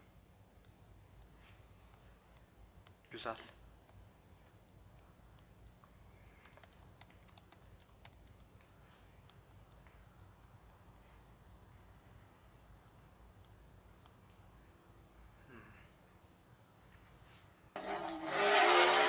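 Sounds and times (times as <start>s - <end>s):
faint irregular clicking: 0.0s - 3.1s, 3.8s - 14.4s.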